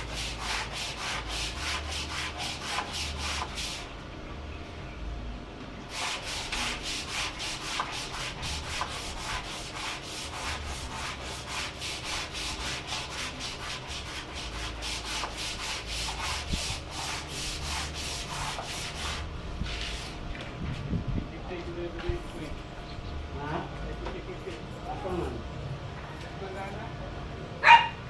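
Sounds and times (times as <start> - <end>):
hand sanding strokes: 0.0 - 4.0, 5.9 - 20.2.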